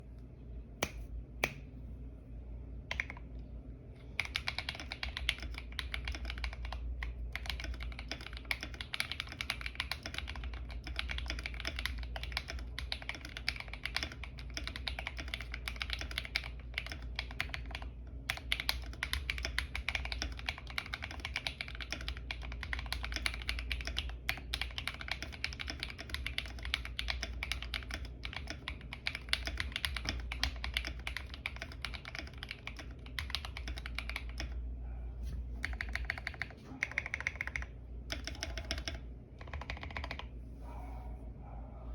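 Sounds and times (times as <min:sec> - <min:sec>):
mechanical keyboard typing: 0:02.9 - 0:03.2, 0:04.2 - 0:34.6, 0:35.6 - 0:40.3.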